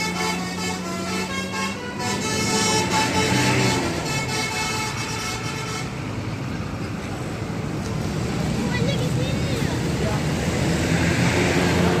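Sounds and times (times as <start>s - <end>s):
musical air horn playing tune: 0.0s - 6.0s
bus rumble: 0.0s - 12.0s.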